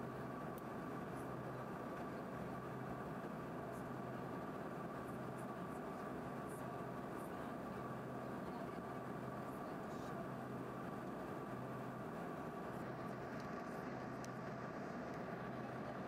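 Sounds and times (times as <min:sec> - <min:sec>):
airflow rushing in jet cabin: 0:00.0 - 0:16.0
jet engines droning: 0:00.0 - 0:16.0
thin steady whine: 0:00.0 - 0:16.0.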